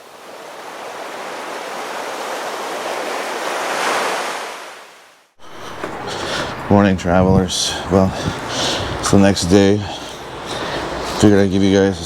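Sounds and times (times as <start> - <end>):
ocean surf on a beach: 0.0 - 12.0.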